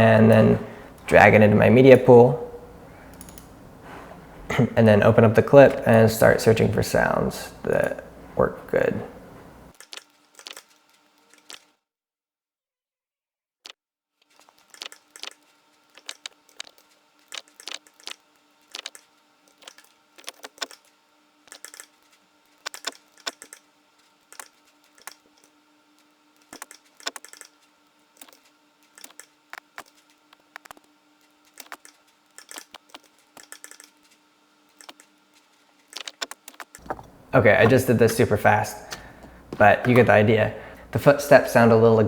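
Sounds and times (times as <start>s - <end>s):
faint steady hum: 0.0s - 9.8s, 20.9s - 42.0s
footsteps on loose stone: 36.0s - 40.3s.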